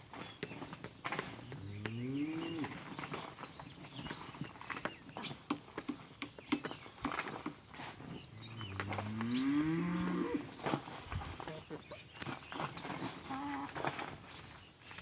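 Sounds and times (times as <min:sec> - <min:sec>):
cow mooing: 0:08.4 - 0:10.5.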